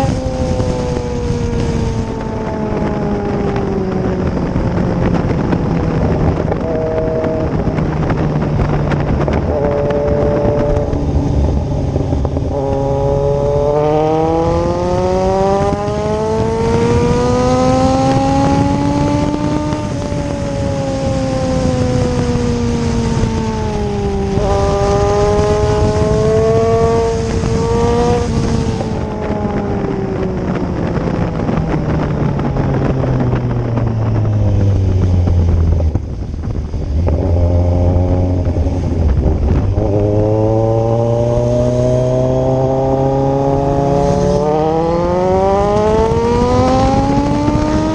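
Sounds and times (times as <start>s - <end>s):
motorcycle engine revving: 0.0s - 47.9s.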